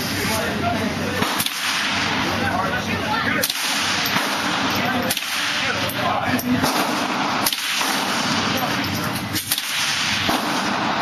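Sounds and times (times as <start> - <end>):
rifle shots: 1.2 - 2.3, 3.4 - 5.9, 6.6 - 11.0.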